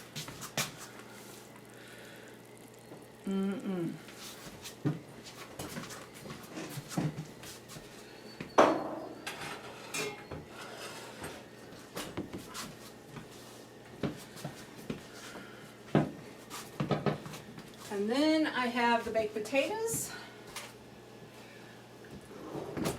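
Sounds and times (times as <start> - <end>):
loud ringing clank: 8.5 - 10.3
dishes and cookware clattering: 8.6 - 11.4.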